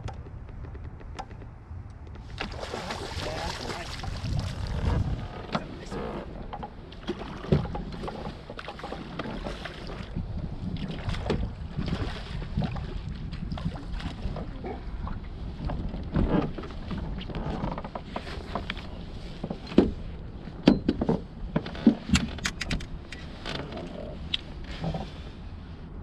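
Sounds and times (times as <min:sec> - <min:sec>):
wind buffeting microphone: 0:00.0 - 0:08.5, 0:09.8 - 0:17.5
water lapping against boat hull: 0:00.0 - 0:25.6
gear knocking and clicking: 0:21.6 - 0:23.6.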